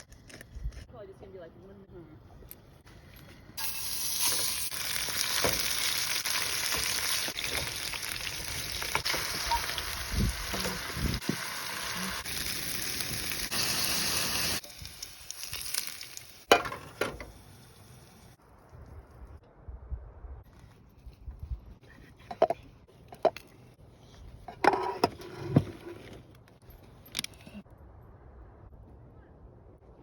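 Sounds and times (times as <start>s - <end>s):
food sizzling in a hot pan: 3.6s - 16.5s.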